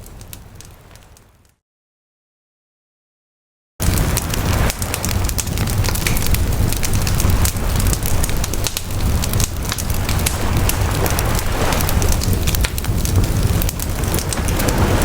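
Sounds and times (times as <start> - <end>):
wood fire crackling: 0.0 - 1.5, 3.8 - 15.0
low rumble: 3.8 - 15.0.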